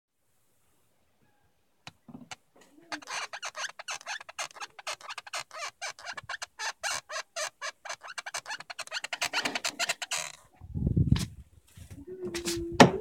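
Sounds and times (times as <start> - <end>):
car body squeaking: 1.9 - 10.4.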